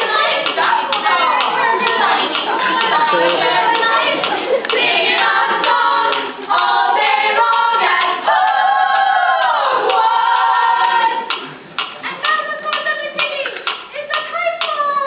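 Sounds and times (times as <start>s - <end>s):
group singing without instruments: 0.0s - 11.4s.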